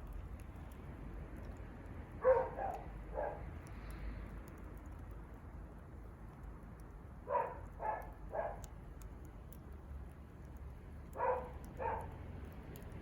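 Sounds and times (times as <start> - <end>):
wood fire crackling: 0.0 - 13.0
dog barking: 2.2 - 3.4, 7.3 - 8.7, 11.2 - 12.2.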